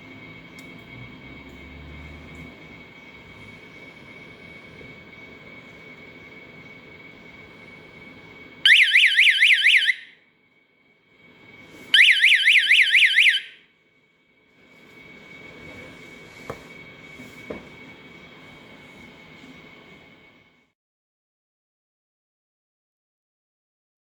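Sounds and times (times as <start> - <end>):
flood detector alarm warbling: 8.6 - 10.1, 11.9 - 13.6.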